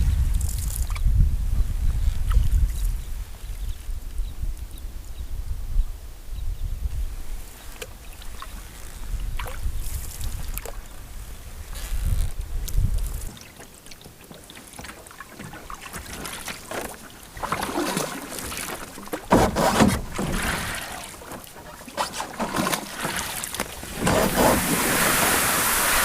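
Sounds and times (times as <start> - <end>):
paddle splashing in water: 7.6 - 10.9, 11.6 - 26.0
paddle knocking on hull: 14.8 - 25.8
steady hiss of water: 22.9 - 26.0.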